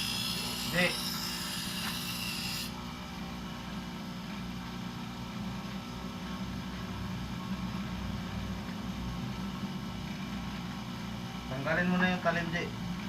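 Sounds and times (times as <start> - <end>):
electric motor humming: 0.0 - 2.8.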